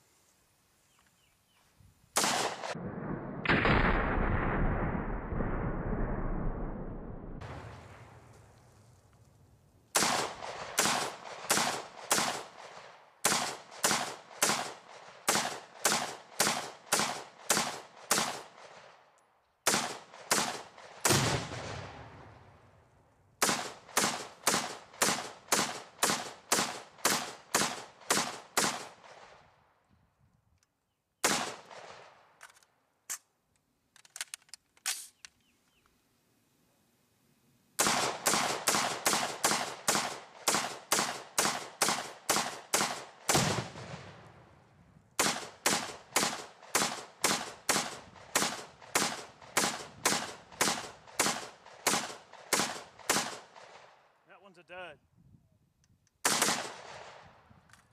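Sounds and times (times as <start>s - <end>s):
rifle gunshots: 2.2s - 5.0s, 9.9s - 19.0s, 19.6s - 22.4s, 23.4s - 29.4s, 31.2s - 32.2s, 37.8s - 44.2s, 45.2s - 54.0s, 56.2s - 57.3s.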